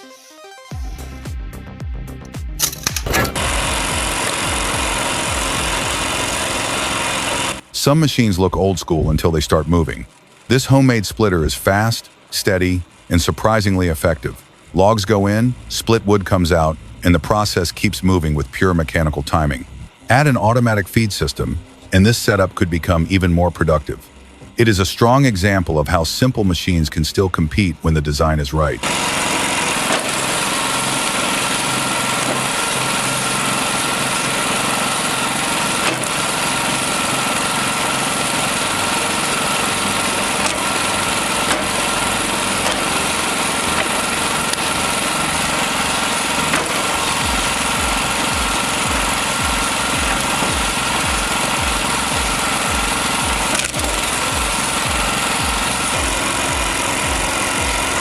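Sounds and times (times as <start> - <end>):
log splitter engine running: 1.0 - 58.0
sharp click: 2.2 - 3.4, 53.5 - 54.0
low repeating pulse: 3.2 - 7.8, 46.6 - 58.0.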